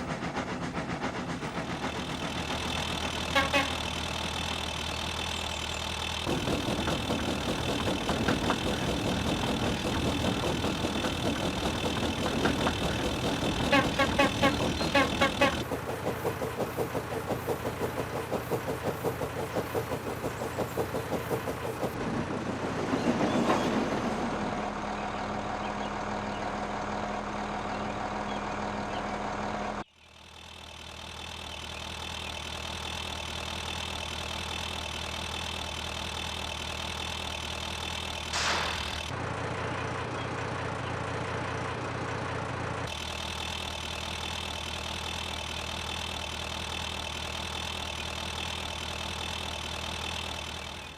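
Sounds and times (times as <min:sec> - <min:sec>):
engine steady hum: 0:00.0 - 0:22.6
steam locomotive chuffing: 0:00.0 - 0:25.5, 0:30.2 - 0:40.0
rush of steam noise: 0:38.3 - 0:39.0.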